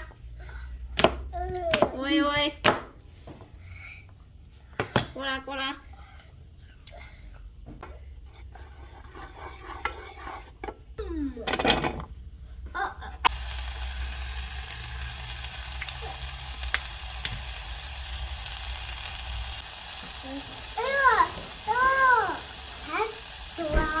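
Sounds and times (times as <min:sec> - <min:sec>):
food sizzling in a frying pan: 0:13.2 - 0:24.0.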